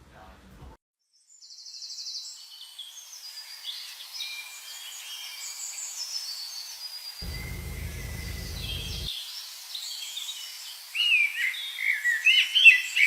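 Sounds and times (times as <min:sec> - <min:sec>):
birds chirping and trilling: 0:07.2 - 0:09.1
low rumbling noise: 0:07.2 - 0:09.1.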